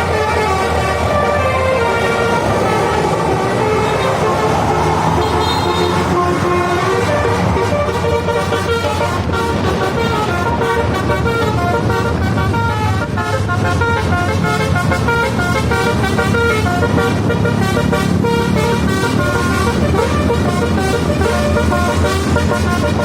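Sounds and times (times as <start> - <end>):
bus engine running low: 0.0 - 23.0
multi-tone bus horn tune: 0.0 - 23.0.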